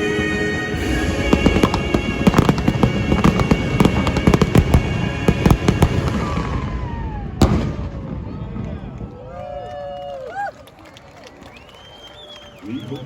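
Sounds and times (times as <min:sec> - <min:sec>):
music: 0:00.0 - 0:06.7
fireworks bangs and crackles: 0:00.0 - 0:09.6.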